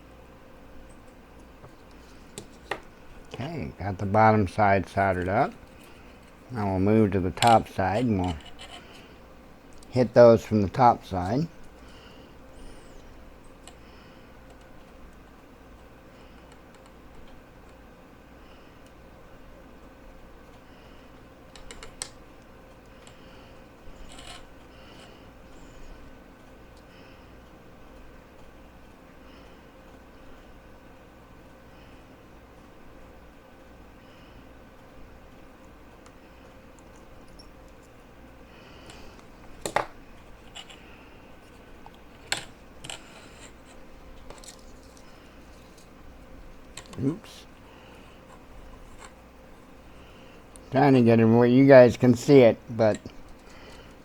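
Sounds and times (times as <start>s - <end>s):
faint steady hum: 0.0s - 54.0s.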